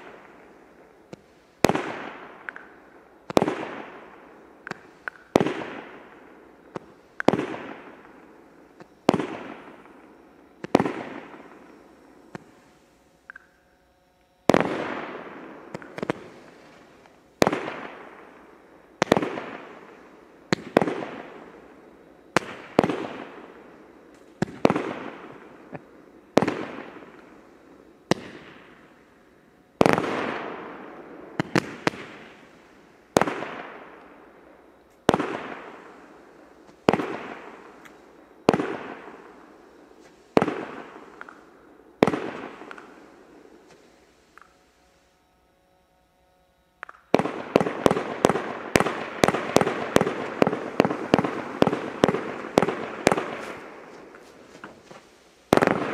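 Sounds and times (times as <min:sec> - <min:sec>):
fireworks bangs: 0:01.1 - 0:12.7, 0:14.4 - 0:18.4, 0:22.3 - 0:27.4, 0:29.8 - 0:34.0, 0:35.0 - 0:44.7, 0:46.8 - 0:55.9.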